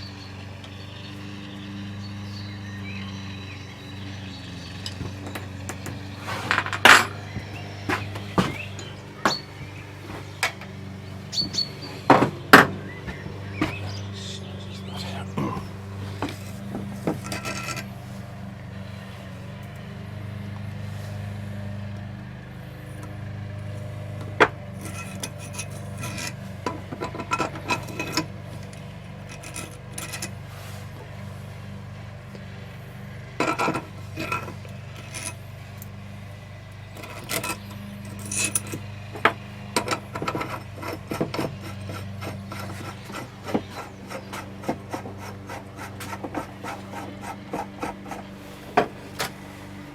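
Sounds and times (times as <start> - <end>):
steady low hum: 0.0 - 49.9
metal tools clicking and knocking: 4.8 - 9.6, 16.2 - 17.9, 24.4 - 30.4, 33.4 - 35.9, 36.9 - 48.2.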